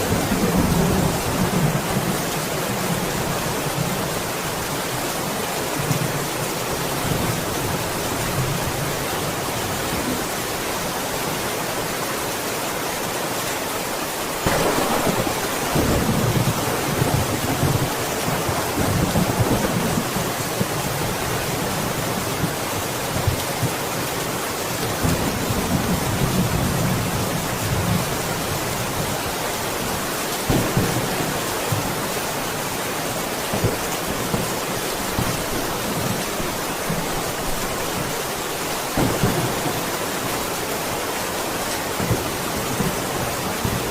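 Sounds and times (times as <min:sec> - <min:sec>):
steady rain: 0:00.0 - 0:43.9
thunder rumbling: 0:14.4 - 0:22.6, 0:30.5 - 0:32.2, 0:38.8 - 0:40.6.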